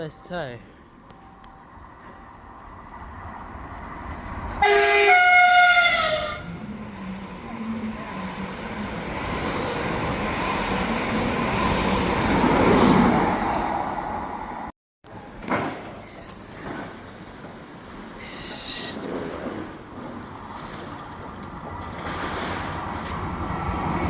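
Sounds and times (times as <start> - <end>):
train rumbling past: 0.1 - 24.0
train two-tone horn: 4.6 - 6.6.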